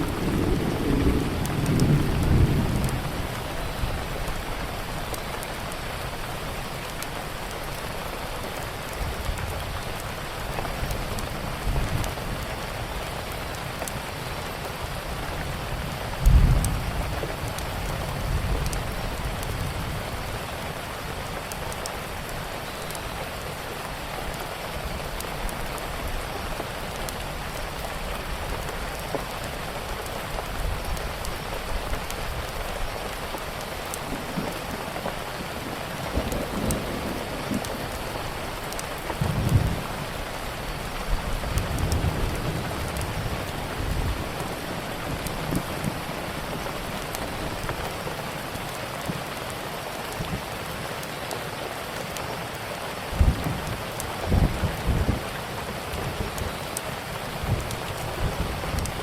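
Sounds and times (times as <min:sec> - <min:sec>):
thunder rumbling: 0:00.0 - 0:06.2, 0:14.6 - 0:20.9, 0:33.8 - 0:49.1, 0:53.1 - 0:59.0
steady rain falling: 0:00.0 - 0:59.0.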